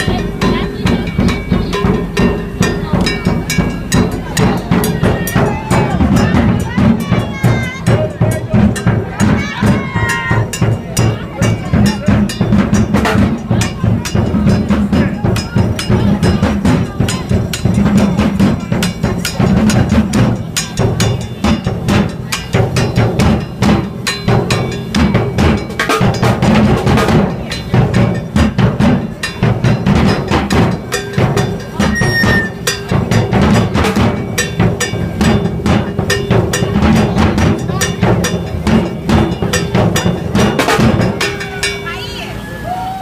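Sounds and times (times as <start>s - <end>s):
music with drums and hand percussion: 0.0s - 42.4s.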